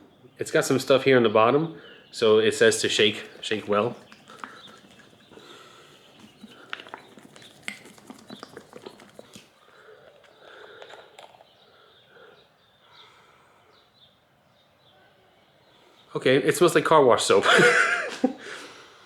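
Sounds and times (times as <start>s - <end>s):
plastic bottle being shaken: 2.7s - 11.5s.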